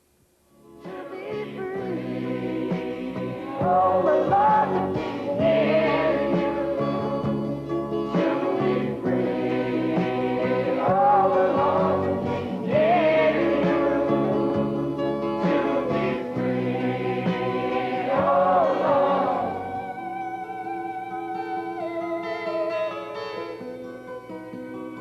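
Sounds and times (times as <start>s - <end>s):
instrumental music: 0.5s - 25.0s
choir singing sustained chords: 0.7s - 20.6s.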